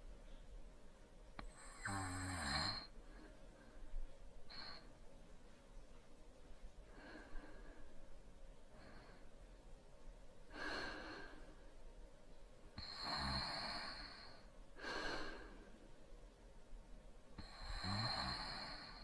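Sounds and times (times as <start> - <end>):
light snoring: 1.4 - 3.0, 12.8 - 15.5, 17.4 - 19.0.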